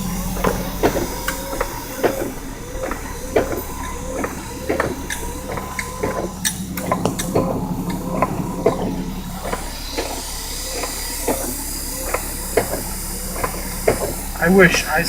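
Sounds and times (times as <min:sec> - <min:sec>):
low engine drone: 0:00.0 - 0:15.0.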